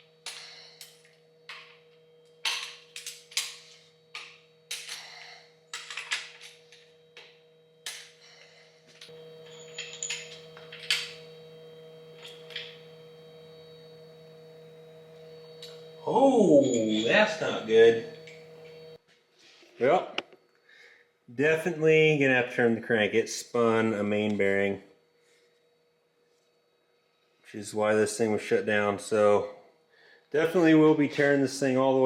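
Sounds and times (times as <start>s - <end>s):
metal tools clanking: 0.0s - 13.7s, 15.1s - 19.0s
steady hum: 0.0s - 32.0s.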